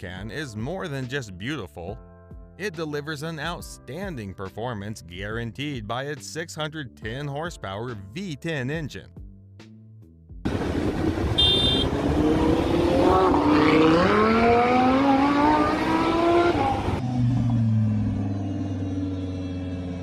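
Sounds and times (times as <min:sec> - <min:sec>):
car engine revving: 0:10.5 - 0:20.0.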